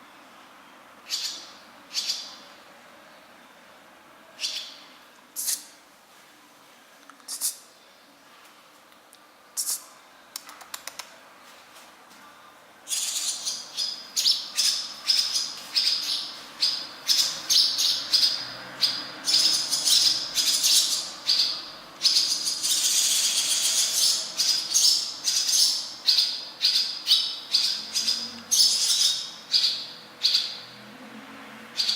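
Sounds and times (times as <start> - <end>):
bird chirping: 1.0 - 2.5, 4.4 - 5.6, 12.9 - 30.8.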